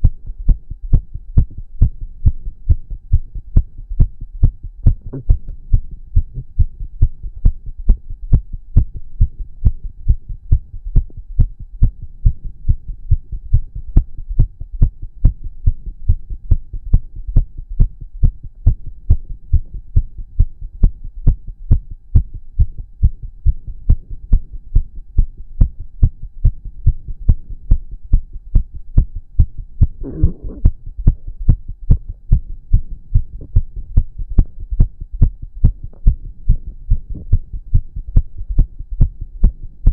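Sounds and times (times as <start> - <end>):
fast heartbeat thumps: 0.0 - 39.9
stomach growl: 30.0 - 31.3.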